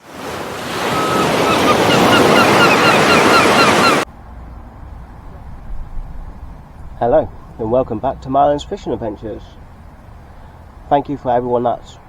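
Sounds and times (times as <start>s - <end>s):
sea waves washing: 0.0s - 4.1s
faint wind rumble: 0.1s - 12.0s
bird chirping: 0.9s - 4.0s.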